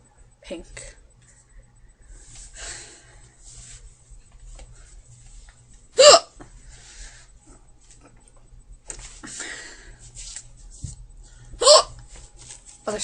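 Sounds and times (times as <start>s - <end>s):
girl hiccuping: 6.0s - 6.4s, 11.6s - 11.9s.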